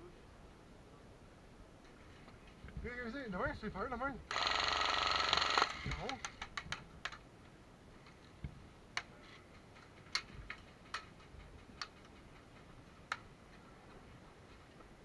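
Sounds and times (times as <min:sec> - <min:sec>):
airsoft gun shots: 0:04.3 - 0:06.4.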